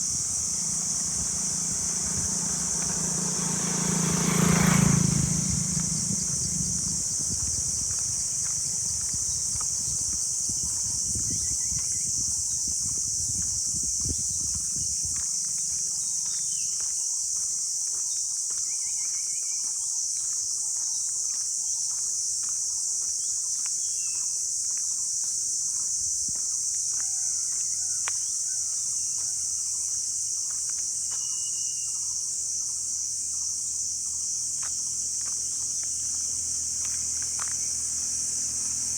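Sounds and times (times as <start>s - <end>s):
high-pitched insect chorus: 0.0s - 38.9s
low rumble: 5.2s - 11.6s.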